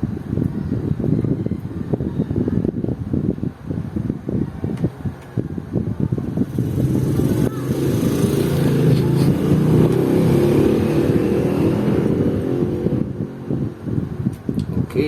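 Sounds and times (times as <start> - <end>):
vehicle engine running: 6.2 - 14.2.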